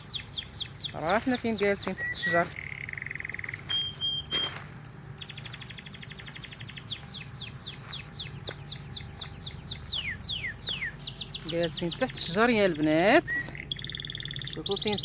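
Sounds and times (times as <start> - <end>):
songbird singing: 0.0 - 15.0.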